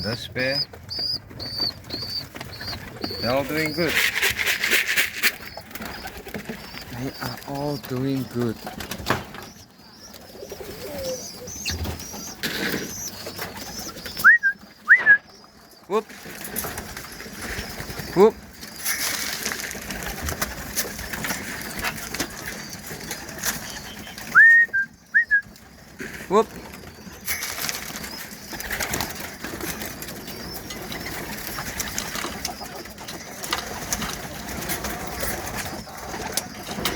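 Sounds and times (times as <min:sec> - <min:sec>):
pigeons cooing: 0:00.0 - 0:36.9
wings fluttering: 0:00.4 - 0:24.4, 0:25.1 - 0:36.9
rustle: 0:18.7 - 0:20.5.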